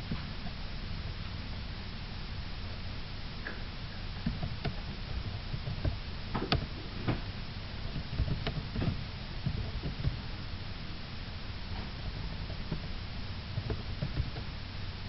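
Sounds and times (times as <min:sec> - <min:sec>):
steady low hum: 0:00.0 - 0:15.0
light clicks and knocks: 0:04.2 - 0:10.6, 0:11.7 - 0:14.6.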